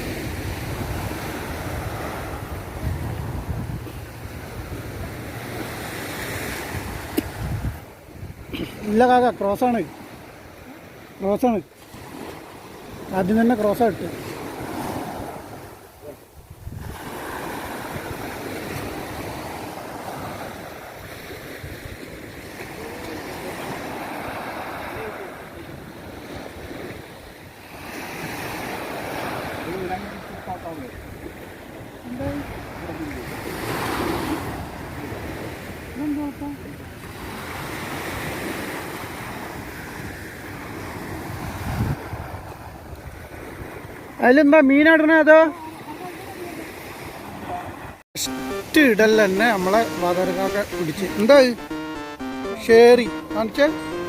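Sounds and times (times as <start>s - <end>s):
wind buffeting microphone: 0.0s - 5.6s, 6.6s - 8.6s, 16.4s - 17.2s, 41.2s - 43.9s
sea waves washing on shore: 0.0s - 54.0s
wind: 0.0s - 54.0s
surf: 27.7s - 54.0s.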